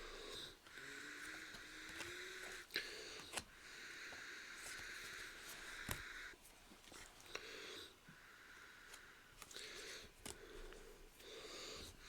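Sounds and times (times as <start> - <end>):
cards rustling: 1.3 - 2.6, 4.6 - 7.3, 8.9 - 10.8.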